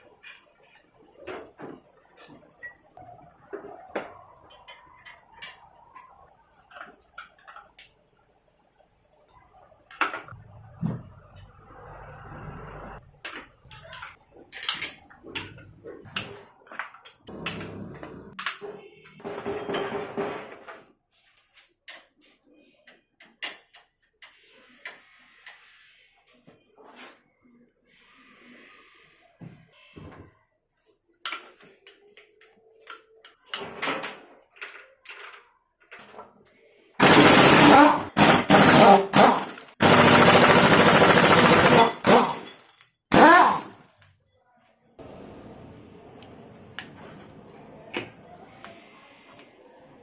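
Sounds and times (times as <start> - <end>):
metal tools clinking and knocking: 2.1 - 6.0, 6.6 - 8.0, 13.6 - 15.8, 18.4 - 21.0
metal tools clinking: 2.2 - 3.9.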